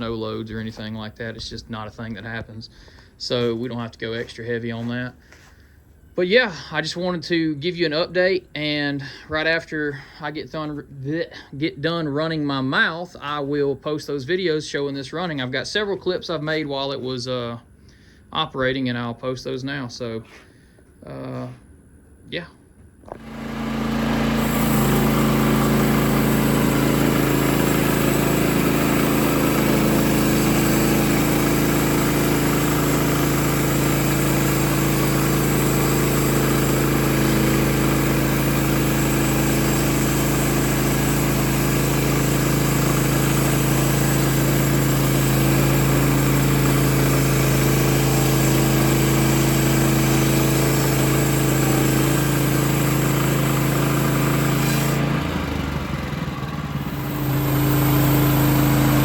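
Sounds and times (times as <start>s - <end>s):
bandsaw mill engine running: 23.1s - 59.0s.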